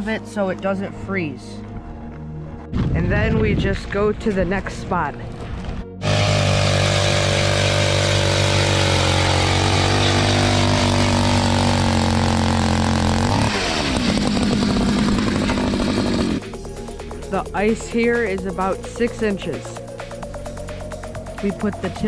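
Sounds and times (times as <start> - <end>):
ice auger engine drilling: 6.0 - 17.0.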